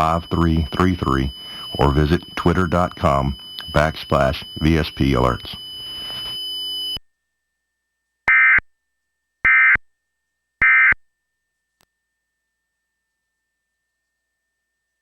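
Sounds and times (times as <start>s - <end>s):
digital data tone bursts: 0.0s - 6.3s.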